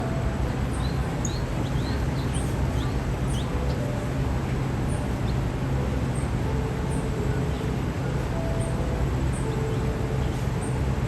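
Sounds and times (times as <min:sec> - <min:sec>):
songbird high chirps: 0:00.7 - 0:03.8.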